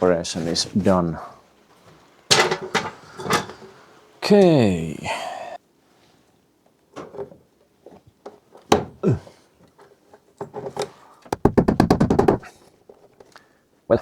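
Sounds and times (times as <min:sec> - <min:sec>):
tools knocking against wood: 0:11.3 - 0:12.5.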